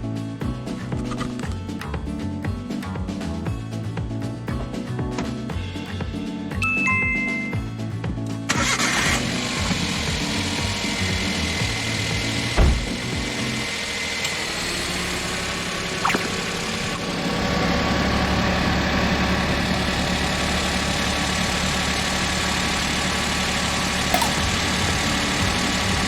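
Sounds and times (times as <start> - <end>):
car engine idling: 8.5 - 26.0.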